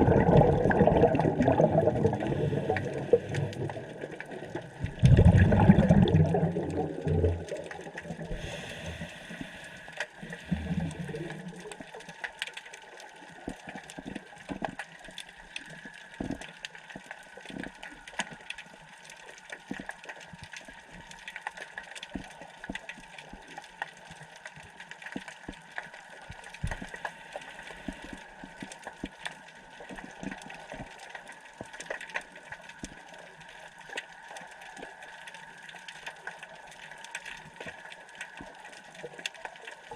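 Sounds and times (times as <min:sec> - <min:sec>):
diver exhaling regulator bubbles: 0:00.0 - 0:09.1, 0:10.4 - 0:11.6
underwater clicks and crackles: 0:00.0 - 0:39.9.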